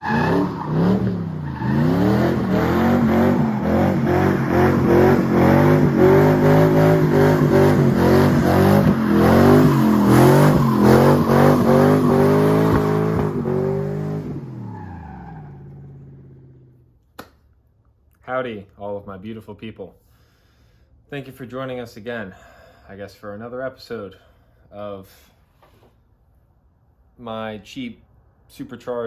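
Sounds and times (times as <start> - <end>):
car engine revving: 0.0 - 16.9.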